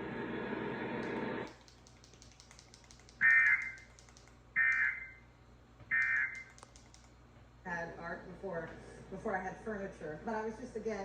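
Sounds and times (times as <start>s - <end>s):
faint rapid clicking: 1.5s - 4.8s, 6.0s - 7.2s.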